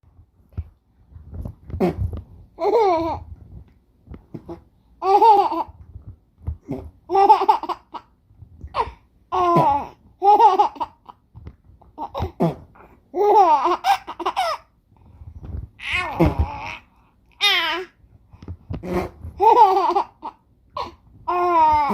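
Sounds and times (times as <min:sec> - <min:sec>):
baby laughing: 0:02.6 - 0:03.3, 0:05.0 - 0:05.8, 0:06.7 - 0:08.1, 0:08.7 - 0:11.2, 0:11.9 - 0:14.7, 0:15.8 - 0:18.0, 0:18.8 - 0:21.9.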